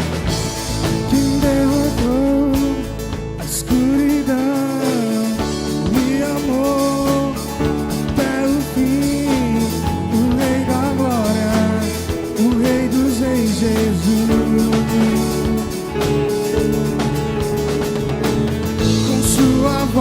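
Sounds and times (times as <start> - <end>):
drums: 0.0 - 20.0
guitar: 0.0 - 20.0
gliding melodic line: 5.4 - 20.0.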